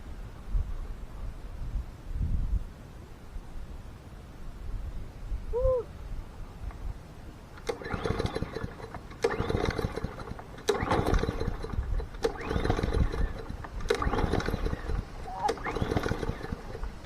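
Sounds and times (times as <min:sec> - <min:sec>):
lawn mower pull-start cranking: 0:07.6 - 0:17.0.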